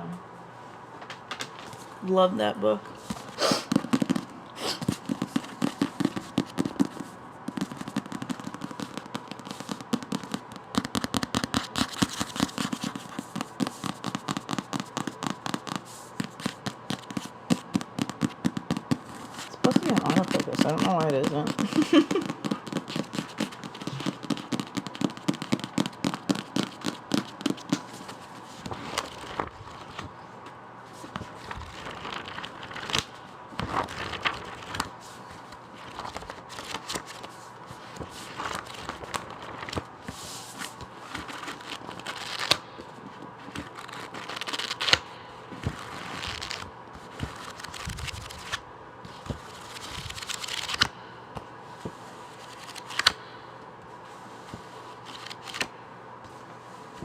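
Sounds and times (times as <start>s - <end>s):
paper rustling: 1.0s - 1.9s, 3.0s - 30.2s, 30.9s - 45.0s, 45.6s - 50.9s, 51.8s - 53.2s, 54.1s - 55.7s
fingers tapping on a book: 3.7s - 19.0s, 19.7s - 27.8s.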